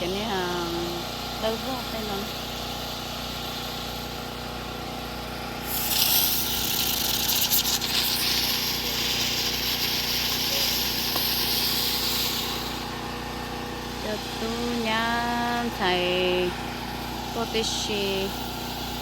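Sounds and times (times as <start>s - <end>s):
engine hum: 0.0s - 19.0s
firework hissing: 5.4s - 13.1s, 16.4s - 19.0s
firework crackling: 5.6s - 13.0s.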